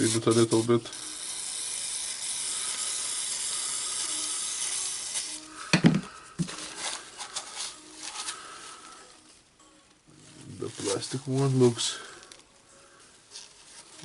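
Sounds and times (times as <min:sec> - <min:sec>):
air jet hissing: 0:00.0 - 0:06.0.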